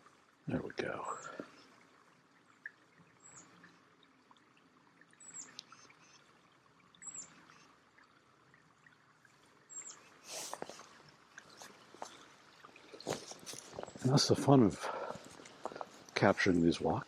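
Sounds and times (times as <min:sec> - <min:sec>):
small waterfall splashing: 0:00.0 - 0:17.0
bird chirping: 0:05.2 - 0:06.3, 0:07.0 - 0:07.7, 0:09.7 - 0:10.2.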